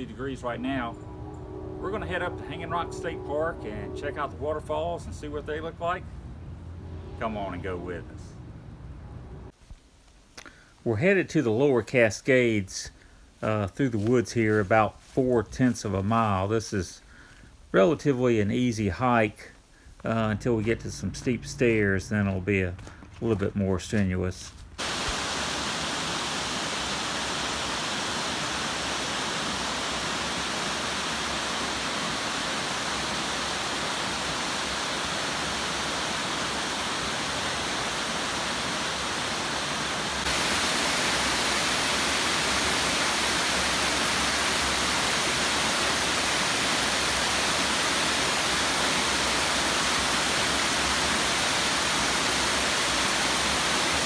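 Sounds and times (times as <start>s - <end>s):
waterfall rushing: 24.8s - 54.0s.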